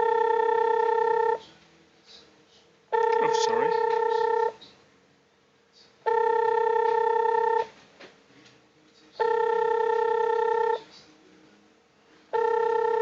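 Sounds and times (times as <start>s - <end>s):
buzzy ringing beep: 0.0s - 1.4s, 3.0s - 4.6s, 6.1s - 7.7s, 9.2s - 10.8s, 12.4s - 13.0s.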